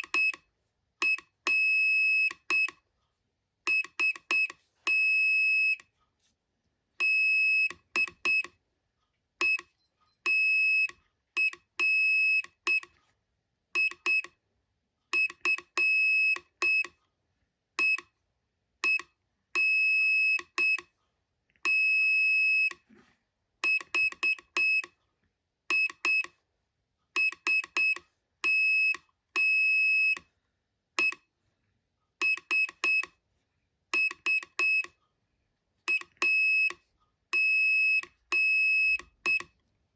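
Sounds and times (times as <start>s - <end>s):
morse code beeps: 23.6s - 24.9s, 27.2s - 30.3s, 32.2s - 33.2s, 34.0s - 35.0s, 37.4s - 39.5s.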